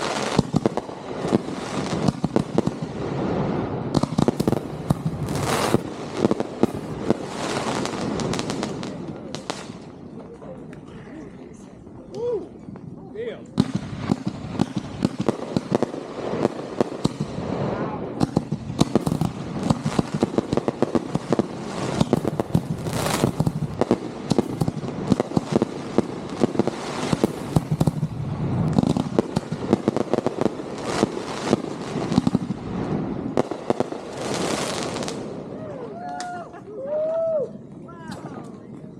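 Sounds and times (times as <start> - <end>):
fireworks bangs and crackling pops: 0.0 - 10.9, 12.5 - 38.9.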